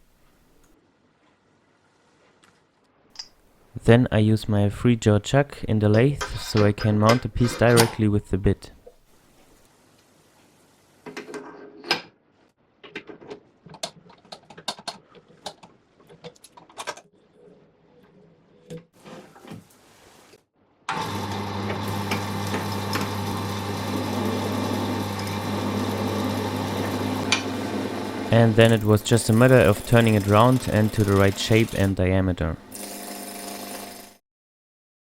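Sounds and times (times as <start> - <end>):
wood lathe humming: 20.9 - 32.0, 32.6 - 34.2.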